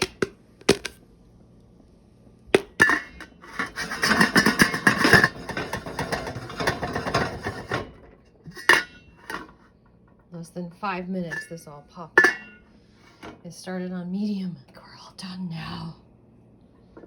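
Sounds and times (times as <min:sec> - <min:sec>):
popcorn rustling in a pot: 0:02.5 - 0:08.7.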